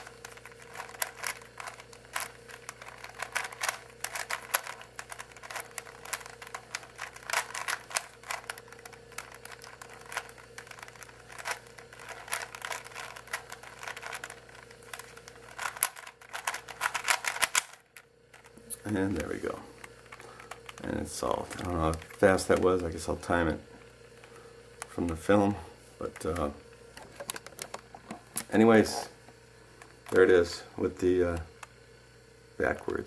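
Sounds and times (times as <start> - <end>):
puzzle cube plastic clicks: 0.0 - 23.6.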